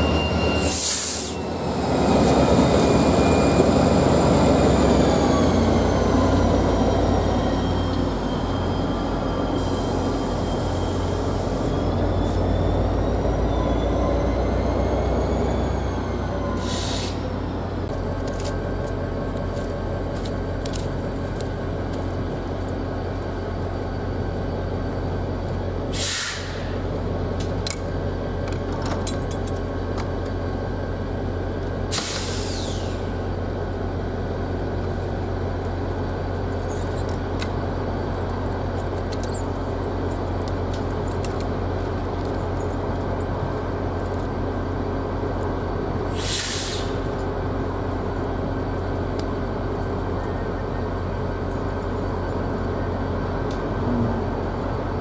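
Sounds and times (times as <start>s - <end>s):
diesel locomotive idling: 0.0s - 28.7s, 37.2s - 55.0s
air brake hiss: 0.6s - 1.4s, 16.6s - 17.2s, 25.9s - 26.8s, 31.9s - 33.1s, 46.1s - 47.1s.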